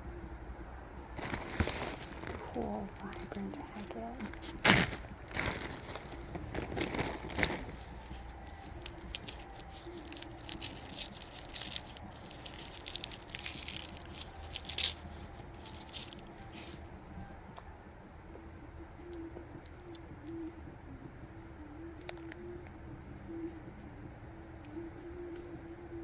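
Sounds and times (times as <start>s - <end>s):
packing material crinkling: 1.2s - 16.8s.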